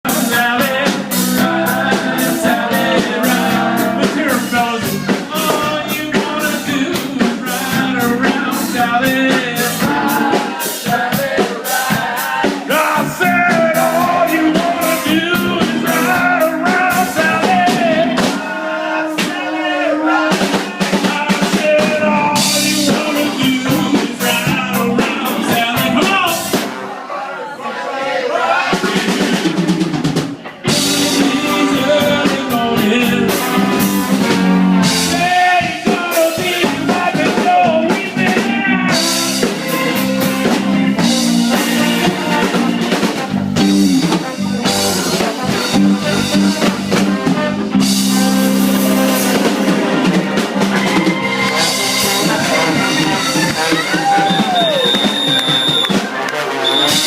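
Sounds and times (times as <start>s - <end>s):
guitar: 0.0s - 19.4s, 20.1s - 26.8s, 28.8s - 57.0s
person singing: 0.0s - 26.6s, 30.5s - 34.0s, 34.8s - 42.9s, 48.3s - 54.9s
drum kit beat: 0.0s - 27.0s, 28.4s - 57.0s.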